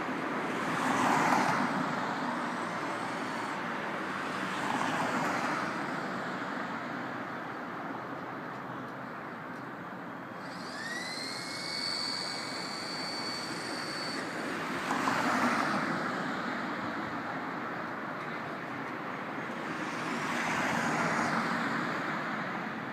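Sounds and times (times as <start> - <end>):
city street traffic noise: 0.0 - 22.9
high whine: 10.4 - 16.2.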